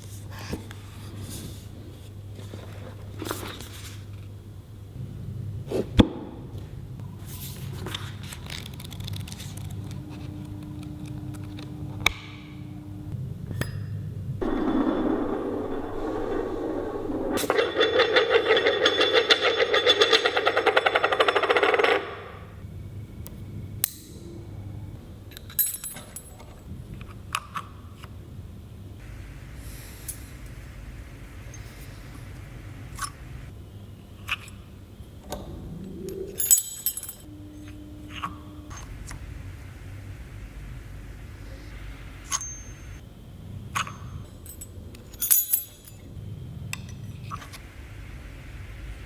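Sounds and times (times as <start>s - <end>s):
ringing metallic clinks: 36.3s - 37.7s.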